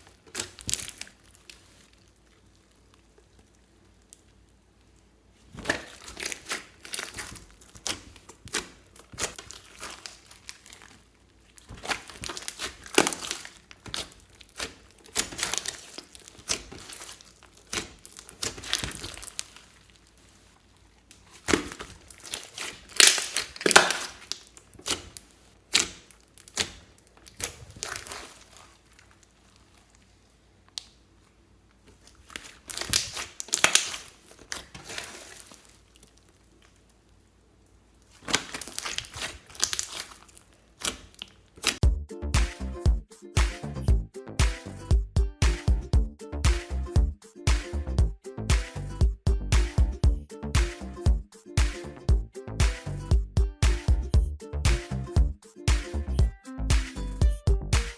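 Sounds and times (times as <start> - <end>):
slime crackling: 0.0 - 41.8.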